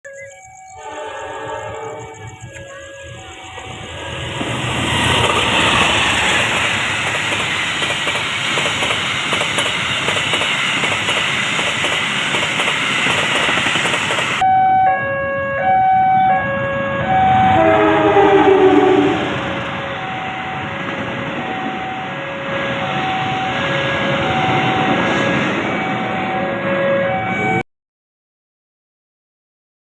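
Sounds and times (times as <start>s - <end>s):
two-tone crossing alarm beeping: 0.0s - 27.6s
train horn: 0.7s - 6.6s, 14.5s - 20.8s
train rushing past: 0.7s - 14.4s, 16.6s - 27.6s.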